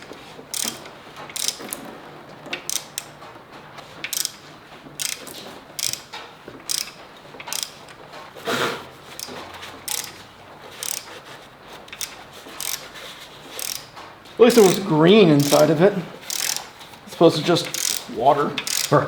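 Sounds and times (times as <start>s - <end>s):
ratchet wrench clicking: 0.0s - 1.8s, 2.6s - 3.2s, 4.0s - 4.4s, 5.0s - 8.0s, 9.2s - 10.2s, 10.8s - 11.2s, 11.9s - 12.9s, 13.5s - 13.9s, 14.5s - 16.8s, 17.6s - 19.0s.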